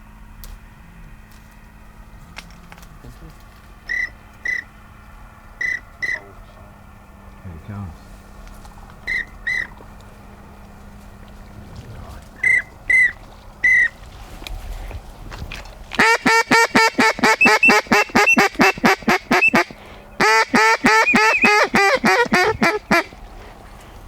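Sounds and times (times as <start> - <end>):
duck call quacking: 3.9 - 4.7, 5.6 - 6.3, 9.1 - 9.8, 12.4 - 14.0, 16.0 - 23.2
duck whistle notes: 3.9 - 4.7, 5.6 - 6.3, 9.1 - 9.7, 12.4 - 14.0, 16.0 - 23.2.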